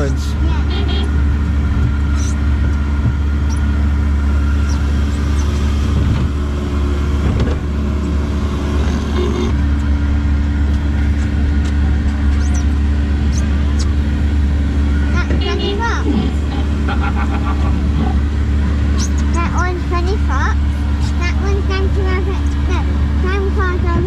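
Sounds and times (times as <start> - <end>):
steady held tones: 0.0 - 10.6, 12.1 - 23.6
ride car humming on track: 0.0 - 24.0.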